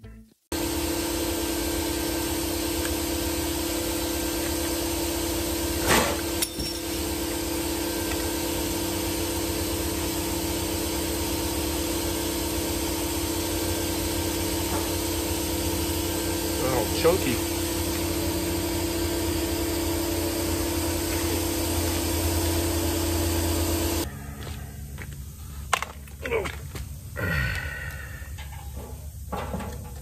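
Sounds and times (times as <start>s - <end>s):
motor humming: 0.5s - 24.1s.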